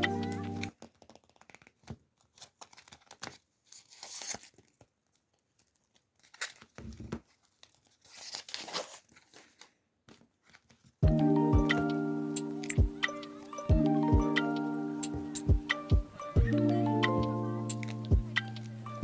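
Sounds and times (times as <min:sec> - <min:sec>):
packaging tearing and crinkling: 0:00.6 - 0:09.7.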